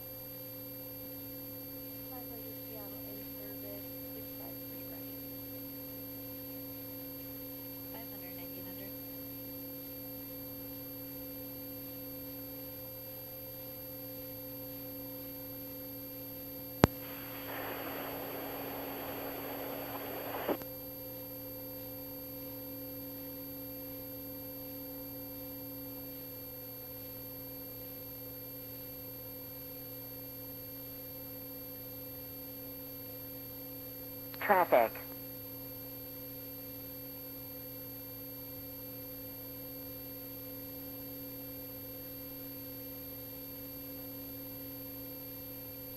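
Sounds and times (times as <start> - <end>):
radio static hiss: 16.8 - 20.6, 34.4 - 35.1
steady electrical hum: 16.8 - 20.6.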